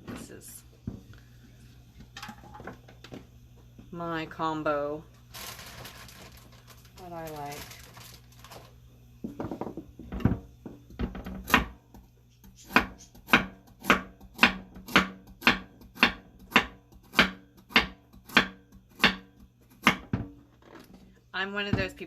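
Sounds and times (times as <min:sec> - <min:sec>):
knife chopping on cutting board: 0:11.0 - 0:20.4.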